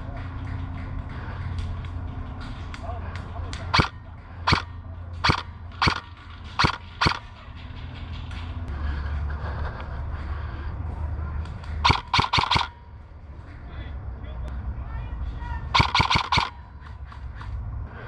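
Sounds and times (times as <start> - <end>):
low steady rumble: 0.0 - 18.0
airsoft gun shots: 3.7 - 7.3, 11.8 - 12.8, 15.8 - 16.6.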